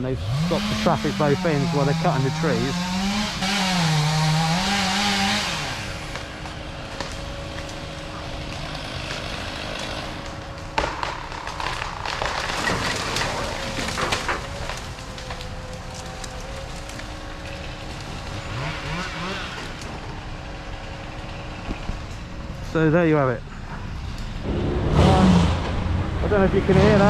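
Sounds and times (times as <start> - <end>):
heavy machinery engine: 0.0 - 27.0
sharp cracks and knocks: 4.2 - 20.1.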